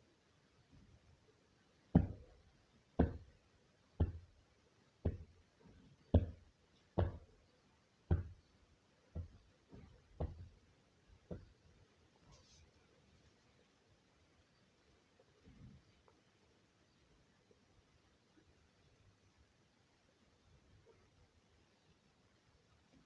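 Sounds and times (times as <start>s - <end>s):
dull knocks: 2.0s - 2.3s, 3.0s - 3.3s, 4.0s - 4.3s, 5.0s - 5.4s, 6.1s - 7.3s, 8.1s - 8.4s, 9.2s - 10.6s.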